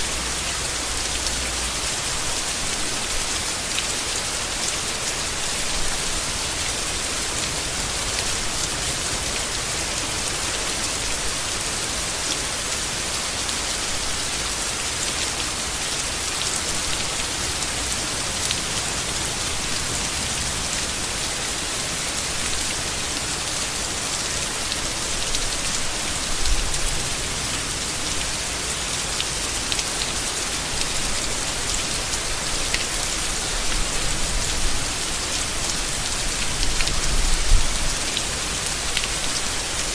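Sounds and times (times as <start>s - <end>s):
rain falling on leaves: 0.0s - 39.9s.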